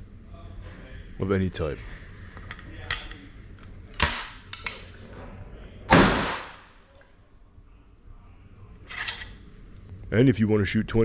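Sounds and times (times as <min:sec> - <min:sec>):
sharp knock: 0:05.9 - 0:06.6
shotgun shot: 0:05.9 - 0:06.7.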